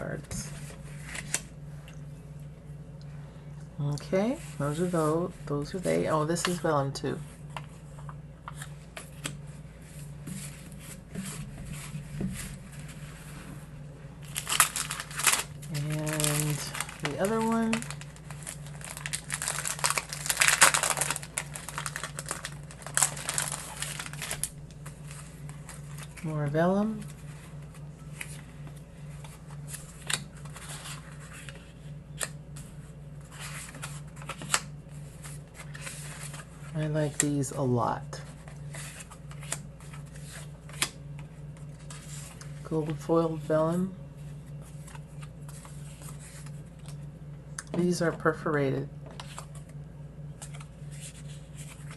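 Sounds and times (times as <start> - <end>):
steady low hum: 0.0 - 51.9
paper cards rustling: 0.3 - 1.5, 14.2 - 37.6, 38.2 - 43.5, 44.5 - 47.0, 49.1 - 51.9.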